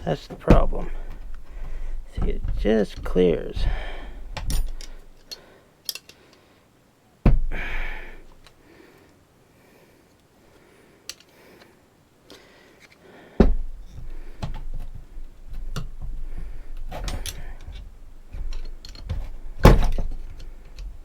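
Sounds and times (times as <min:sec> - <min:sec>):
brake parts knocking and clicking: 0:00.0 - 0:06.2, 0:13.4 - 0:21.0
rubbing and handling noise: 0:00.0 - 0:06.4, 0:13.6 - 0:21.0.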